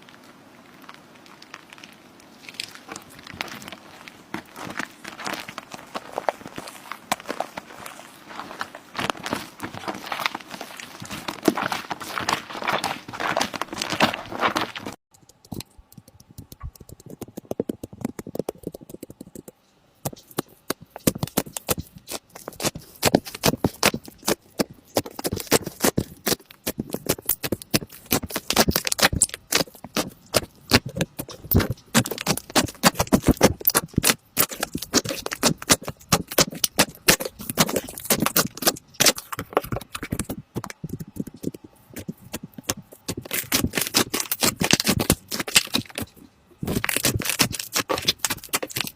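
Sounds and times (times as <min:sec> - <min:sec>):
slime squishing by hand: 0:00.7 - 0:48.9.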